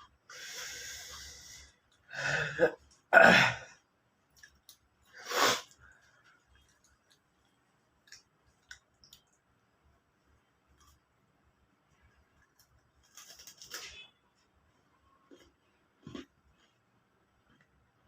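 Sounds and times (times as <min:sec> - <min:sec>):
person breathing with long hiss: 0:00.3 - 0:02.6, 0:05.1 - 0:05.8
sneeze-like bursts of breath: 0:05.2 - 0:05.7.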